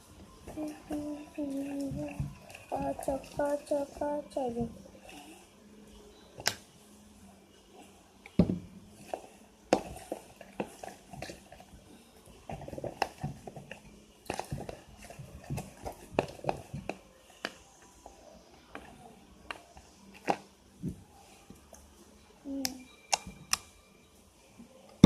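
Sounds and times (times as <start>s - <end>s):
slime stirred squelching: 0.0s - 5.5s, 8.9s - 21.9s.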